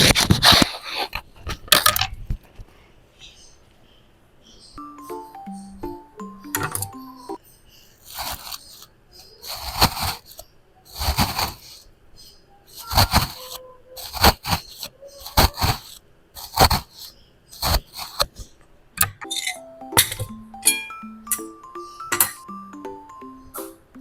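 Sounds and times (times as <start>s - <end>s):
food preparation scraping: 0.0s - 1.3s, 8.0s - 11.8s, 12.8s - 18.5s.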